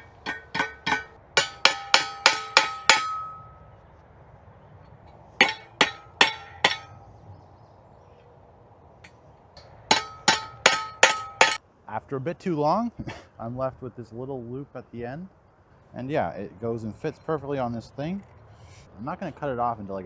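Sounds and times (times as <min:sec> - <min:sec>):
hammer striking metal rod: 0:00.0 - 0:03.6, 0:05.4 - 0:07.0, 0:09.6 - 0:11.6.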